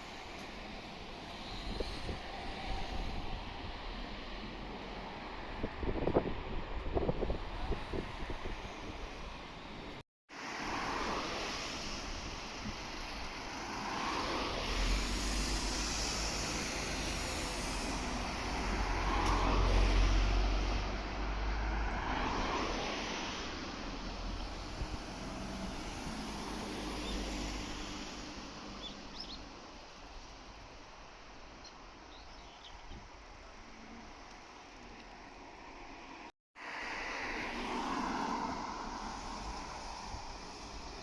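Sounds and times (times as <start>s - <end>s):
vehicle passing by: 13.8s - 28.8s, 36.7s - 40.9s.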